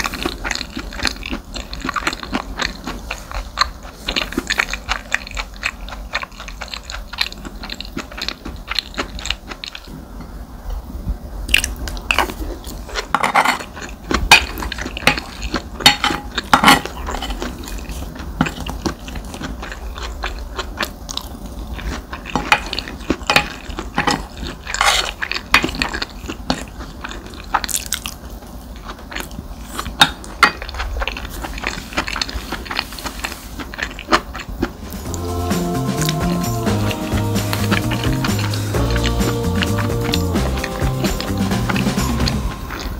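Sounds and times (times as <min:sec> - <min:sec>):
chewing fried rice: 0:00.0 - 0:42.9.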